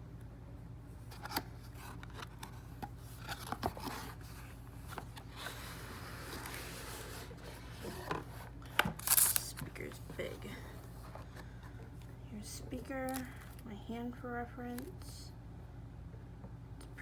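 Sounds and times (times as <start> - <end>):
steady low hum: 0.0 - 17.0
cardboard packaging handled: 1.0 - 9.8.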